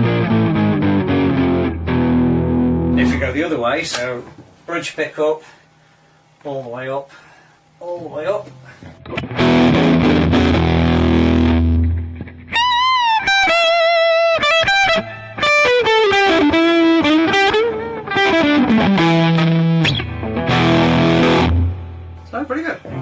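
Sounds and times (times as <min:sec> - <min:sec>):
overdriven electric guitar: 0:00.0 - 0:03.3, 0:09.0 - 0:22.2.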